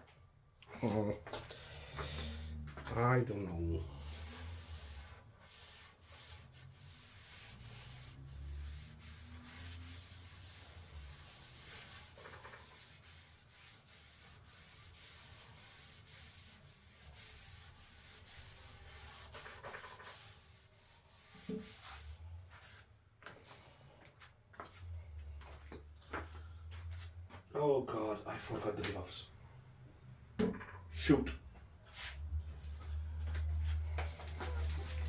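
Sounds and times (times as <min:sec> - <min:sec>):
sandpaper rubbing on wood: 0:03.6 - 0:22.3, 0:33.6 - 0:35.0.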